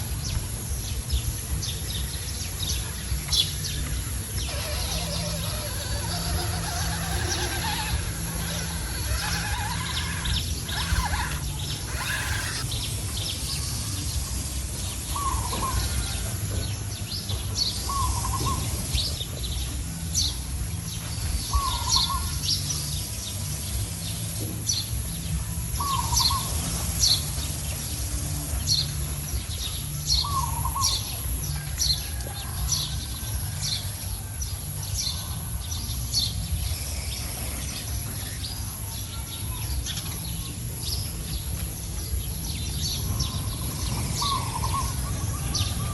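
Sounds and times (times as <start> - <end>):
birds chirping: 0.0 - 32.0, 32.9 - 45.9
lower bird call: 4.3 - 12.8.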